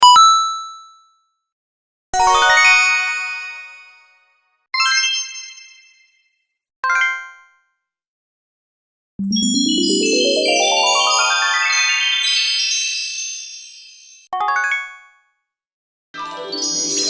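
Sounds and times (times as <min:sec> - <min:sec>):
magic sparkle chimes: 0:09.2 - 0:14.3, 0:16.5 - 0:17.0.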